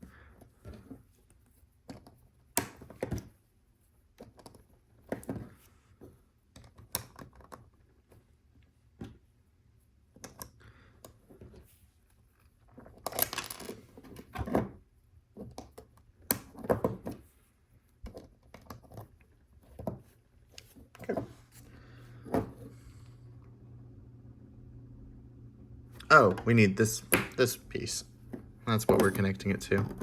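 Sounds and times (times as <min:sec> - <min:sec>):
plastic bricks clicking and clattering: 0:12.8 - 0:13.8.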